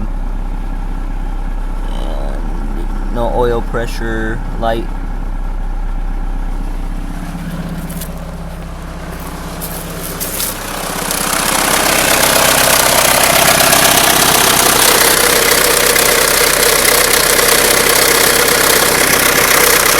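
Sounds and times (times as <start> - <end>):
car engine idling: 0.0 - 19.9
rapid engine knocking: 0.0 - 19.9.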